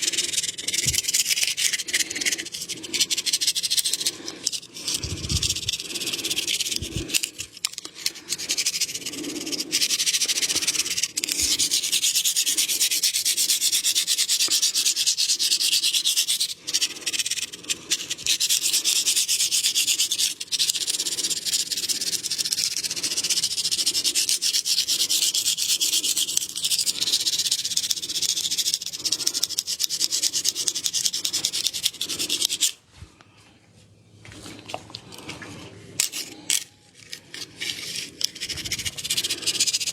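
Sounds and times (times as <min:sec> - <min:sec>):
hands rubbing skin and hair: 0:00.0 - 0:13.0.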